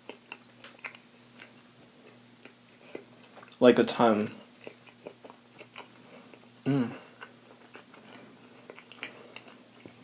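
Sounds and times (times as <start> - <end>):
person chewing food: 0.0 - 3.6, 4.3 - 10.0
person humming: 6.6 - 7.1.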